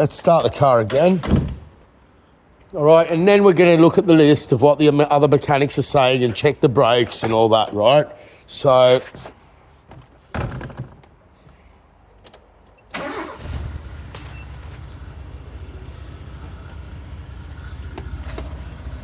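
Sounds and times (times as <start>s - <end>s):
van engine starting and idling: 12.9s - 19.0s.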